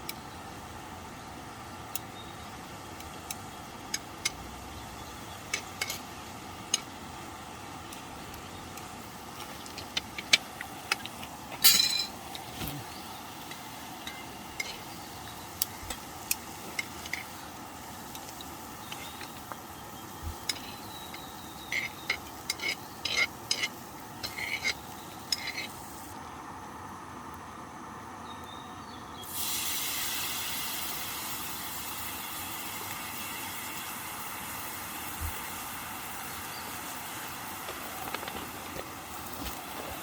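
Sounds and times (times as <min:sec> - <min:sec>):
steady low hiss: 0:00.0 - 0:40.0
cutlery and cookware clinking: 0:09.9 - 0:12.2, 0:13.5 - 0:14.9, 0:20.4 - 0:25.7.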